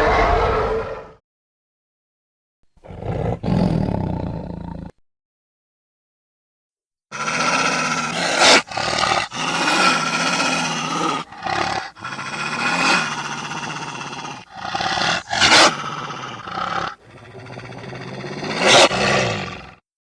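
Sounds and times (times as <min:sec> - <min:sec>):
deep growling snarls: 0:02.8 - 0:05.0, 0:07.1 - 0:19.9.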